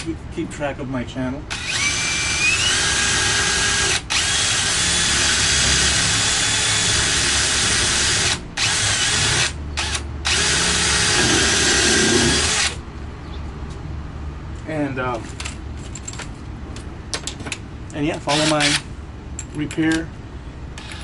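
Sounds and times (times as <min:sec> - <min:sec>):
power drill drilling into wood: 0:01.5 - 0:12.8.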